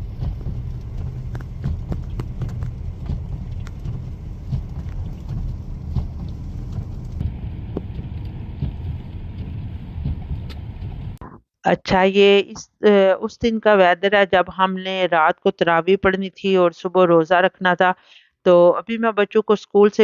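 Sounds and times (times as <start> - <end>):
ice pellets ticking: 0.0 - 9.5
wind buffeting microphone: 0.0 - 11.2.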